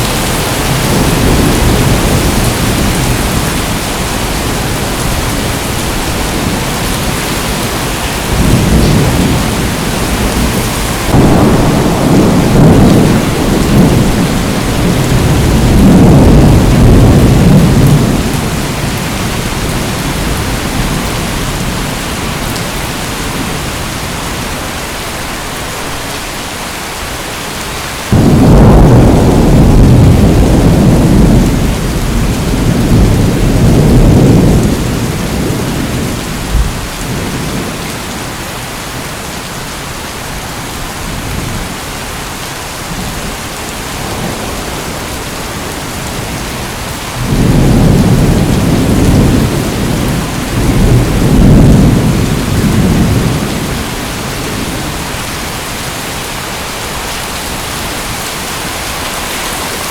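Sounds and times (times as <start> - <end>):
rolling thunder: 0.0 - 23.8, 28.1 - 38.2, 44.0 - 55.6
heavy rain: 0.0 - 59.9.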